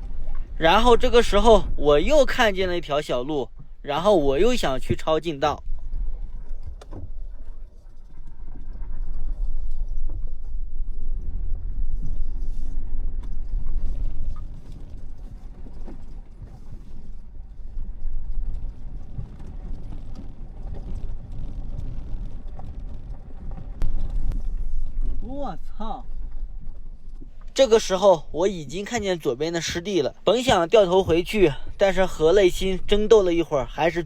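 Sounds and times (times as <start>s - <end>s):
tyres rumbling on dirt track: 27.6s - 34.0s.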